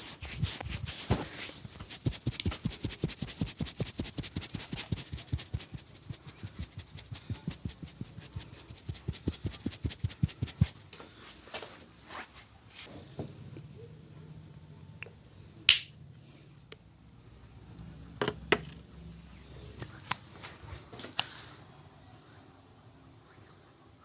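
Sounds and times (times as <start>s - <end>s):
hands slapping body: 1.9s - 10.8s.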